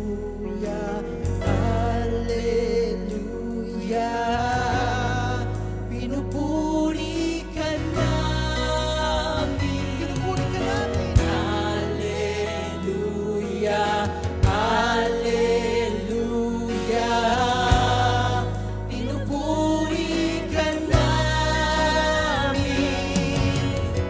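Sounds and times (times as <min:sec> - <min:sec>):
people singing praise song: 0:00.0 - 0:24.0
worship band playing: 0:00.0 - 0:24.0
drum hits: 0:10.2 - 0:11.9, 0:14.0 - 0:15.0.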